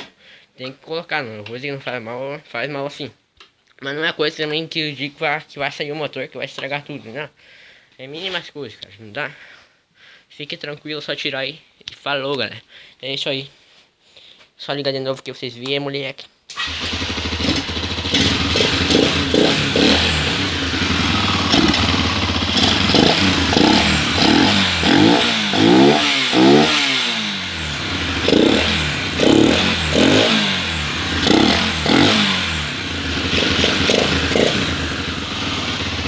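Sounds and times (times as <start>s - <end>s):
motorcycle engine revving: 16.5s - 36.0s.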